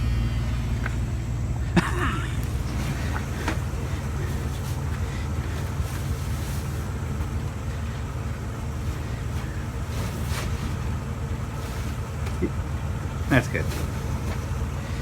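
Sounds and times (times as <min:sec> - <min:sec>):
vehicle engine idling: 0:00.0 - 0:15.0.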